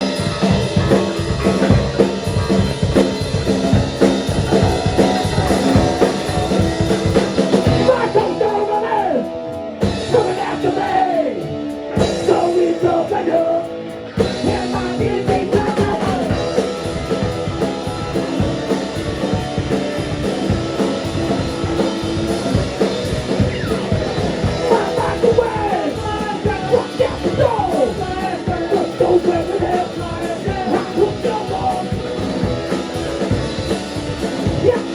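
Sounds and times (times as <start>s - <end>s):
drum kit: 0.0s - 34.9s
rock band playing live: 0.0s - 34.9s
person singing: 4.4s - 19.5s, 24.4s - 33.7s, 34.3s - 34.9s.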